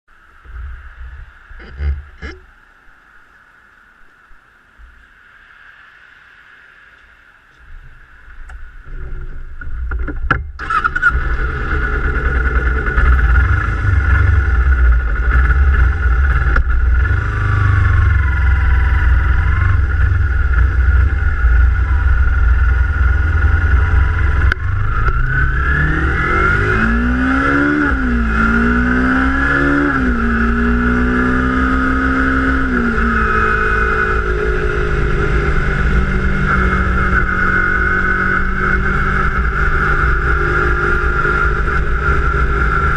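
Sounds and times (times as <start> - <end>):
wind rumble on microphone: 0.1 - 42.9
motorcycle engine revving: 1.2 - 2.4, 10.4 - 42.9.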